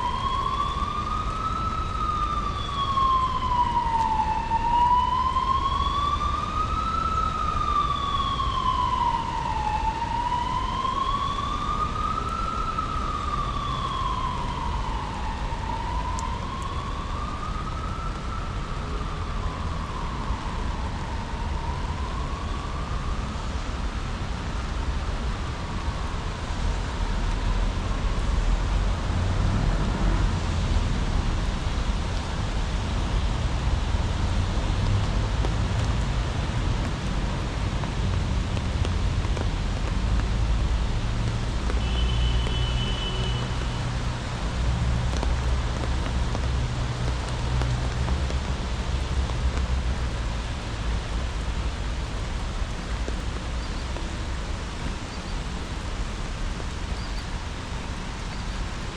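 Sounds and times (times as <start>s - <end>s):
distant emergency siren wailing: 0.0s - 28.3s, 29.1s - 58.9s
steady rain hiss: 0.0s - 58.9s.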